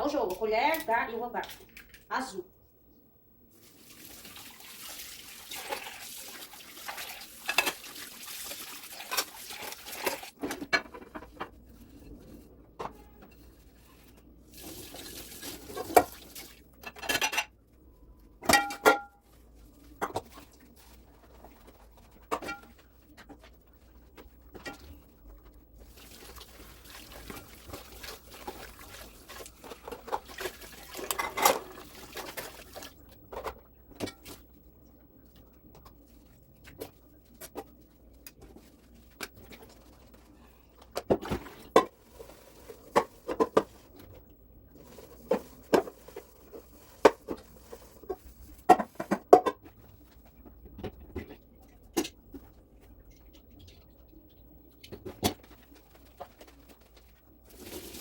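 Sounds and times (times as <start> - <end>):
tap water running: 3.6 - 10.4, 14.5 - 16.6, 25.8 - 33.1
dishes and cutlery clinking: 18.4 - 19.2.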